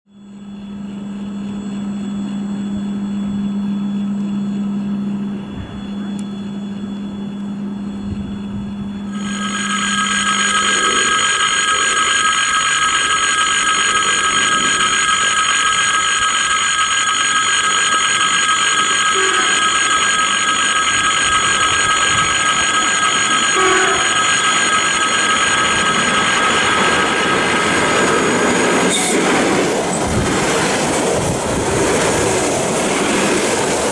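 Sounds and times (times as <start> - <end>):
high whine of passing train: 0.1 - 33.9
train horn: 9.1 - 17.0, 18.8 - 19.6, 21.3 - 25.9.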